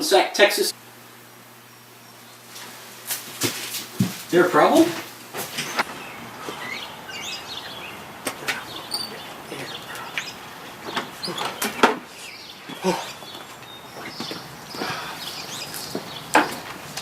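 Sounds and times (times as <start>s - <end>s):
high chirping squeaks: 5.6s - 16.6s.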